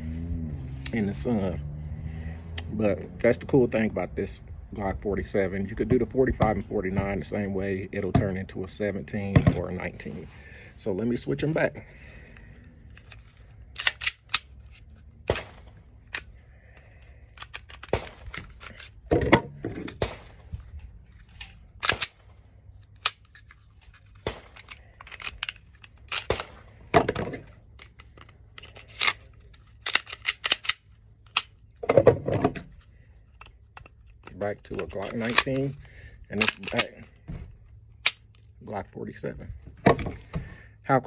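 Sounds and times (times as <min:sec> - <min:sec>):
pistol slides clicking metallically: 0:13.1 - 0:14.8, 0:21.3 - 0:22.2, 0:22.8 - 0:26.5, 0:27.7 - 0:31.6, 0:36.4 - 0:36.9, 0:38.0 - 0:38.5.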